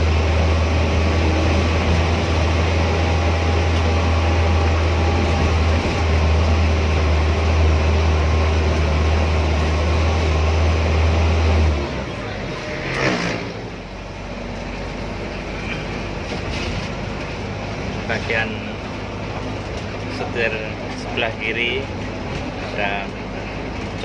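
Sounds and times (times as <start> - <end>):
engine and road noise in car cabin: 0.0 - 24.0.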